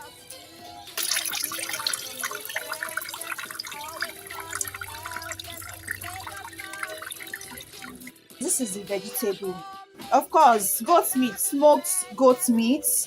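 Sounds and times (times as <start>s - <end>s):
water splashing and dripping: 1.0s - 8.2s.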